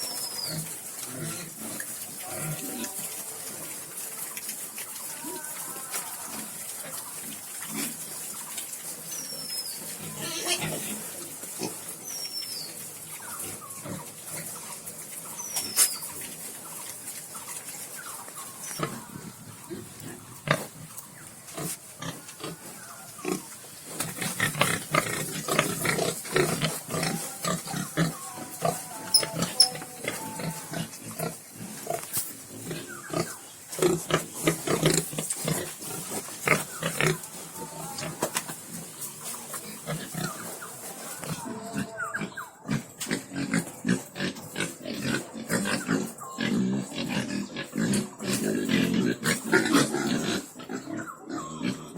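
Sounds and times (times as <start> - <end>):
piglets grunting: 9.9 - 11.9, 18.6 - 51.9.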